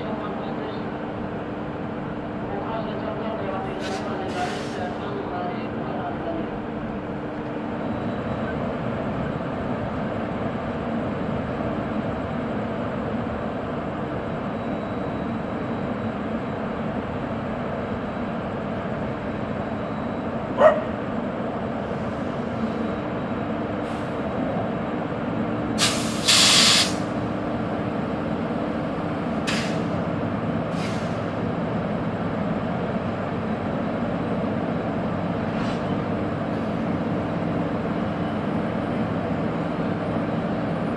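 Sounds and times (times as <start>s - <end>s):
locomotive machinery humming: 0.0s - 40.9s
compressed air hissing: 25.8s - 27.1s.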